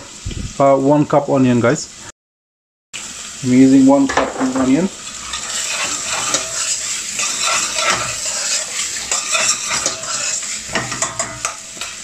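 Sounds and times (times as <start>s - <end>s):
onions sizzling in hot oil: 0.0s - 2.1s, 3.0s - 12.0s
spoon scraping and clicking on pan: 5.1s - 12.0s.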